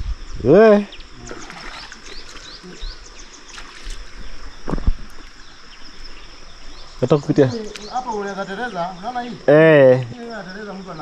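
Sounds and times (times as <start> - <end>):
high insect drone: 0.0 - 11.0
dull thump: 4.6 - 5.2.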